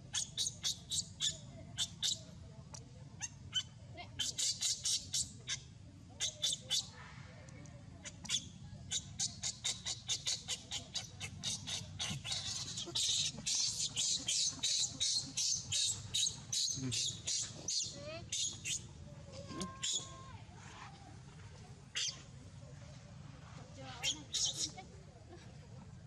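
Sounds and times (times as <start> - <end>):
high-pitched animal calls: 8.0 - 18.8, 19.6 - 20.2, 22.0 - 22.2.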